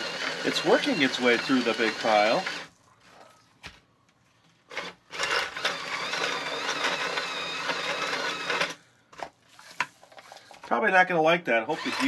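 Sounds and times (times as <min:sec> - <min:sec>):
toy motor whirring with high whine: 0:00.0 - 0:02.7, 0:04.7 - 0:08.8, 0:11.7 - 0:12.0.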